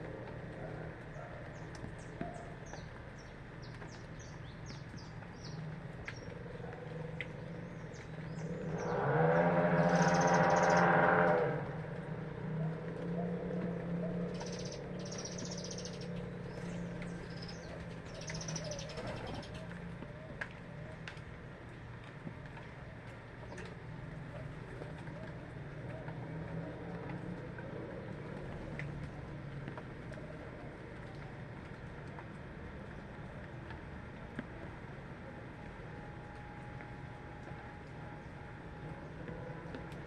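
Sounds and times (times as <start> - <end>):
small birds chirping: 0.5 - 11.0, 13.1 - 21.1.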